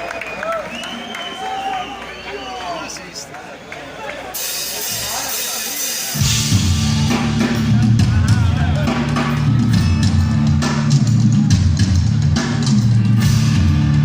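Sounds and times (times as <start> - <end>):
crowd noise: 0.0 - 14.0
pounding drums and percussion: 4.4 - 13.8.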